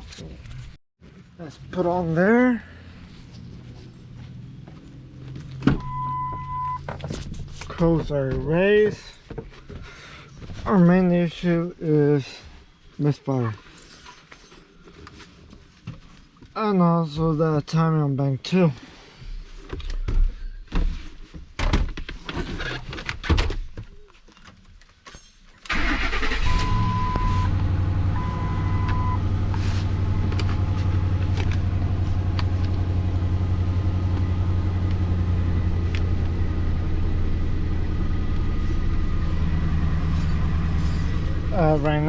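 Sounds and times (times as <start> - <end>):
short chime beeps: 5.8 - 6.8
car engine starting and idling: 25.7 - 42.0.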